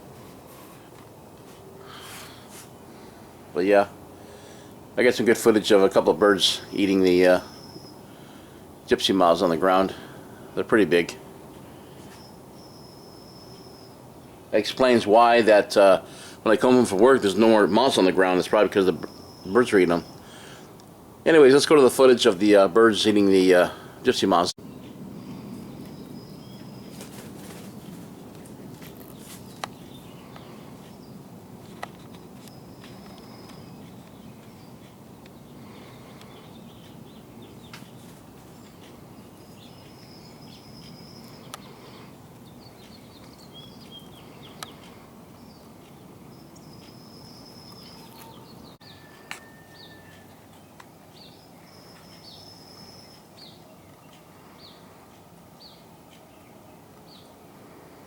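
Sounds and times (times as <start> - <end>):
low background noise: 0.0 - 58.0
songbirds whistling and chirping: 6.3 - 8.6, 11.6 - 14.9, 18.8 - 20.7, 24.6 - 31.2, 32.1 - 58.0.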